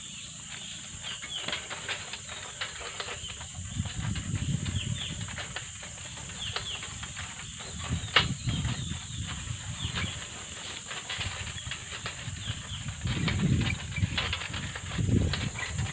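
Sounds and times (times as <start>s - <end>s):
birds chirping: 0.0s - 15.9s.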